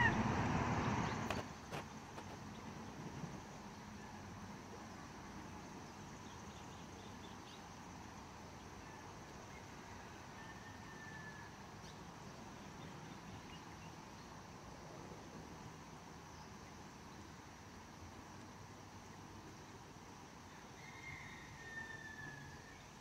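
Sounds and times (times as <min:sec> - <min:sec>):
faint bird calls: 0:00.0 - 0:01.4
steady outdoor hiss: 0:00.0 - 0:23.0.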